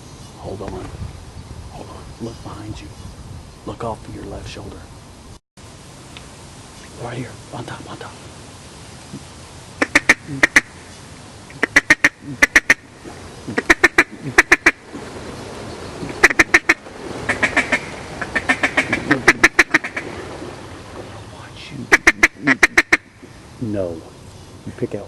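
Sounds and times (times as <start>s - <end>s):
duck call quacks: 9.8s - 10.7s, 11.6s - 12.8s, 13.5s - 14.8s, 16.2s - 20.1s, 21.9s - 23.1s.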